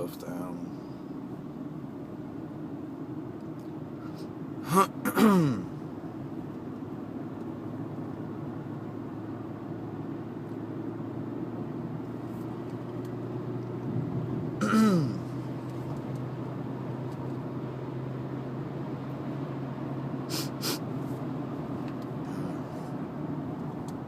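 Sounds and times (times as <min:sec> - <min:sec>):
car engine and road noise: 0:00.0 - 0:24.0
person vocalizing: 0:04.6 - 0:05.7, 0:14.6 - 0:15.3, 0:22.3 - 0:22.8.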